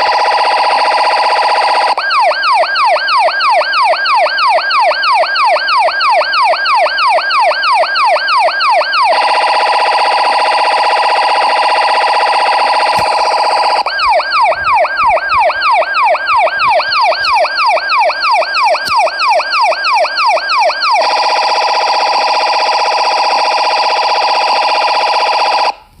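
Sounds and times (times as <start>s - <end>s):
electronic police siren: 0.0s - 25.8s.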